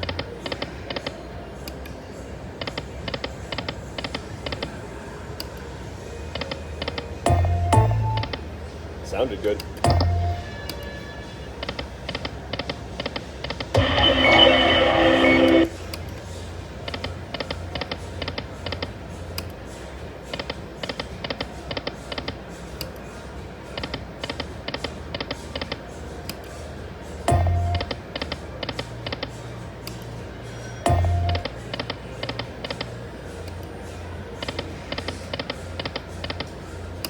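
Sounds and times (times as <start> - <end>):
slot machine reel clicking: 13.6 - 15.7
electronic jingle: 13.8 - 15.7.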